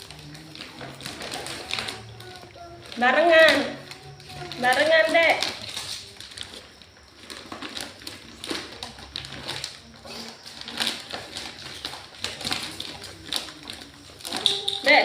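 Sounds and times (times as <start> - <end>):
toy packaging opened by hand: 7.2 - 14.8.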